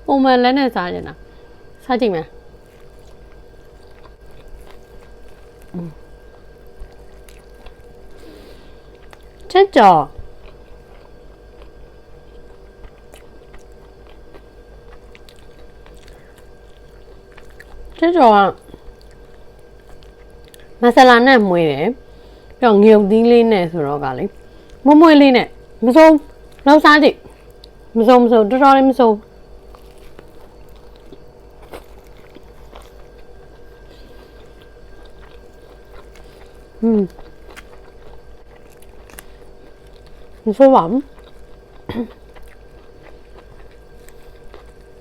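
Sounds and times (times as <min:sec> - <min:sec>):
faint steady hum: 0:00.0 - 0:45.0
person chewing crunchy chicken: 0:02.4 - 0:09.5, 0:10.1 - 0:18.0, 0:18.6 - 0:20.8, 0:29.3 - 0:45.0.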